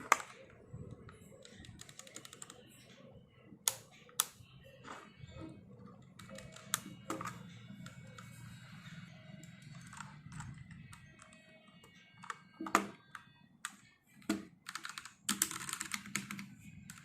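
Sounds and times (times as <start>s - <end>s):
mechanical keyboard typing: 1.4s - 2.6s, 6.2s - 7.4s, 14.6s - 17.0s.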